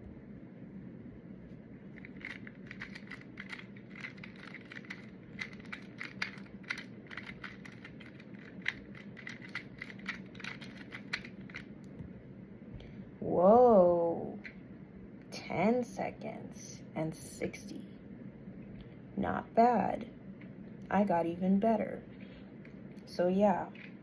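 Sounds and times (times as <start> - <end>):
faint steady hum: 0.0 - 24.0
puzzle cube plastic clicks: 2.0 - 11.7.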